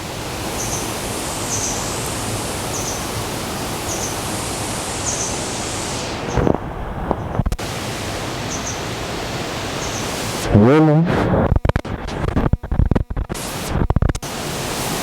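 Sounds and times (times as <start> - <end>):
waterfall rushing: 0.0 - 6.4, 7.6 - 10.9, 14.2 - 15.0.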